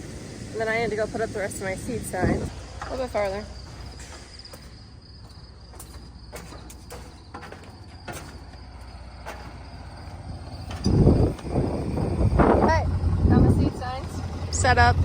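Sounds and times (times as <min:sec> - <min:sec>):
insects trilling: 0:00.0 - 0:14.9
low outdoor rumble: 0:00.0 - 0:15.0
loud burst of low rumbling: 0:10.1 - 0:15.0.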